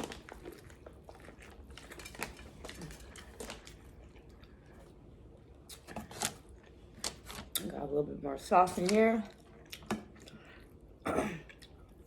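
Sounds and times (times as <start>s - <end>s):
chewing: 0.2s - 5.0s, 9.3s - 10.8s.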